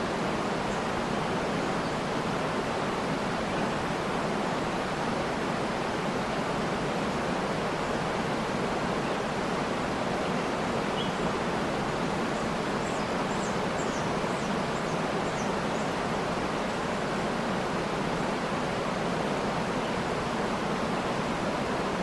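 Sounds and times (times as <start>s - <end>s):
faint bird chirps: 10.3s - 11.2s.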